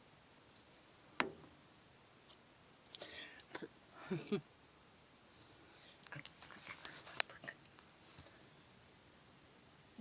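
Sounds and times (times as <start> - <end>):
faint background noise: 0.0 - 10.0
faint clicks and rustles: 5.8 - 8.4.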